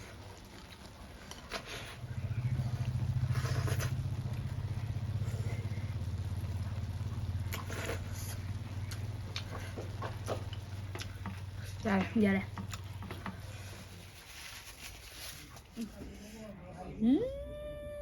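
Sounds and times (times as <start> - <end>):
low motor hum: 1.8 - 13.7.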